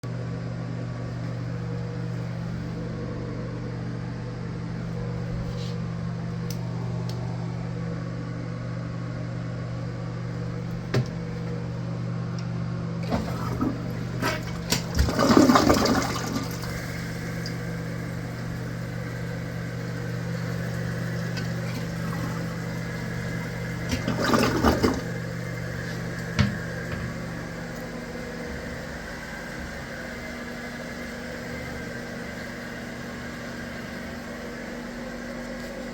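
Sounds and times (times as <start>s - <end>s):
steady low hum: 0.0s - 35.9s
toilet flush clicks: 13.0s - 17.7s, 23.8s - 25.2s, 25.8s - 27.2s
toilet flushing water rush: 13.0s - 34.7s.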